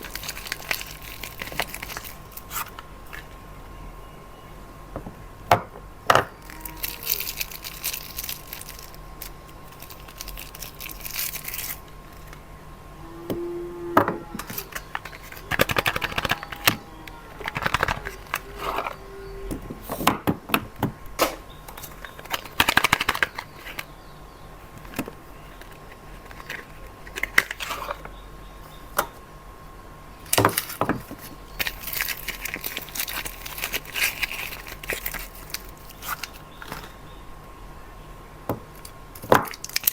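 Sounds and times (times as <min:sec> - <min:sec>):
wrappers crinkling and rustling: 0:00.0 - 0:03.4, 0:06.4 - 0:12.4, 0:14.4 - 0:19.2, 0:21.8 - 0:23.9, 0:24.7 - 0:28.1, 0:30.3 - 0:37.0, 0:38.8 - 0:39.9.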